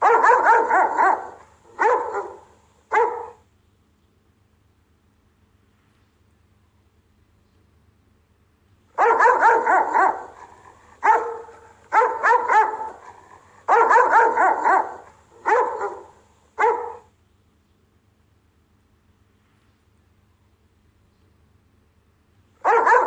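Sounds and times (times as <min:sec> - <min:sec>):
dog barking: 0:00.0 - 0:03.4, 0:09.0 - 0:17.1, 0:22.6 - 0:23.0.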